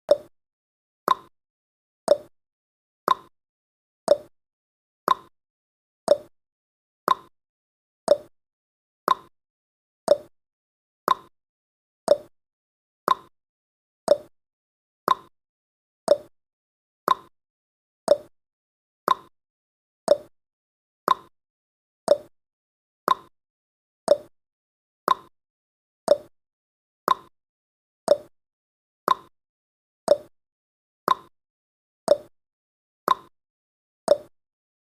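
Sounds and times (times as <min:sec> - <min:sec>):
timer ticking: 0:00.1 - 0:00.3, 0:01.1 - 0:01.3, 0:02.1 - 0:02.3, 0:03.1 - 0:03.3, 0:04.1 - 0:04.3, 0:05.1 - 0:05.3, 0:06.1 - 0:06.3, 0:07.1 - 0:07.3, 0:08.1 - 0:08.3, 0:09.1 - 0:09.3, 0:10.1 - 0:10.3, 0:11.1 - 0:11.3, 0:12.1 - 0:12.3, 0:13.1 - 0:13.3, 0:14.1 - 0:14.3, 0:15.1 - 0:15.3, 0:16.1 - 0:16.3, 0:17.1 - 0:17.3, 0:18.1 - 0:18.3, 0:19.1 - 0:19.3, 0:20.1 - 0:20.3, 0:21.1 - 0:21.3, 0:22.1 - 0:22.3, 0:23.1 - 0:23.3, 0:24.1 - 0:24.3, 0:25.1 - 0:25.3, 0:26.1 - 0:26.3, 0:27.1 - 0:27.3, 0:28.1 - 0:28.3, 0:29.1 - 0:29.3, 0:30.1 - 0:30.3, 0:31.1 - 0:31.3, 0:32.1 - 0:32.3, 0:33.1 - 0:33.3, 0:34.1 - 0:34.3.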